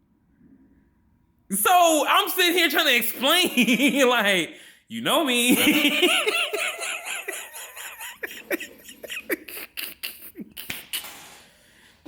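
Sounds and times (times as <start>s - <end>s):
man laughing breathily: 5.6s - 11.0s.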